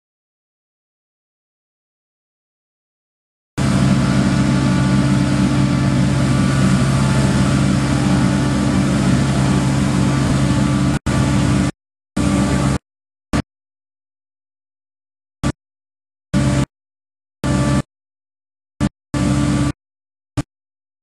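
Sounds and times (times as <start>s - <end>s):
low hum tones: 3.6s - 12.8s
street sweeper engine and blower: 3.6s - 12.8s, 16.4s - 16.6s, 17.4s - 17.9s, 19.2s - 19.7s.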